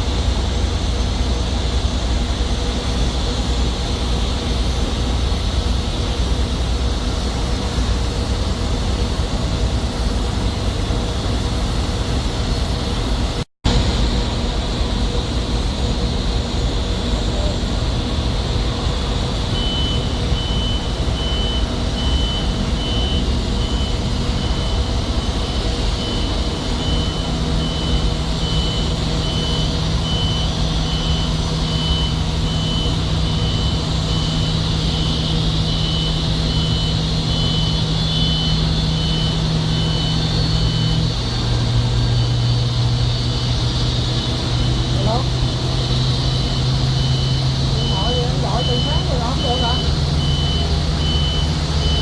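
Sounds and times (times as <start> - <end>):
engine and traffic noise: 0.0 - 52.0
reversing alarm beeping: 18.8 - 52.0.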